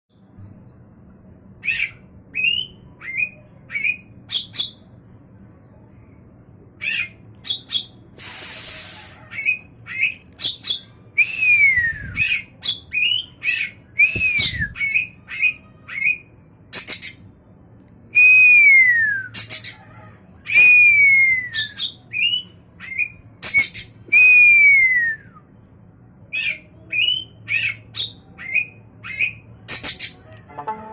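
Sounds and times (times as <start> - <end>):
harsh rasping bird call: 8.2 - 10.1.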